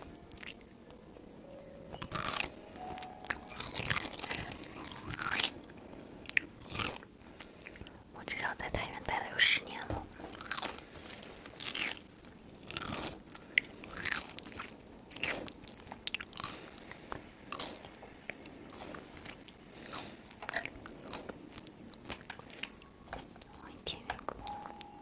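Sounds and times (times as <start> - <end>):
person chewing crunchy food: 0.0 - 0.7, 1.9 - 8.0, 9.7 - 24.9.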